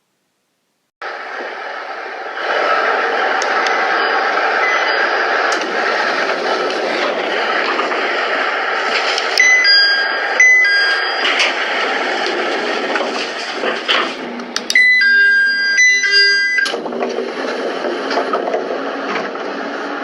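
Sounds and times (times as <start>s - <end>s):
train noise: 1.0s - 20.0s
two-note electronic door chime: 9.4s - 11.5s, 14.7s - 16.7s.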